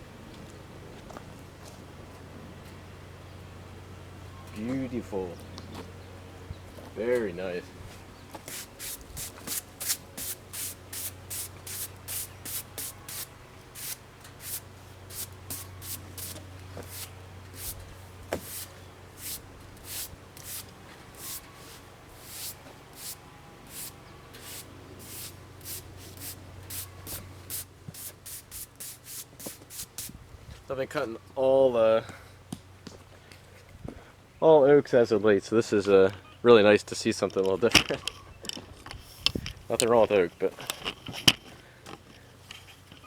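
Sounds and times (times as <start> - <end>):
steady low hum: 0.0 - 34.4
brush swishing sawdust: 8.3 - 30.2.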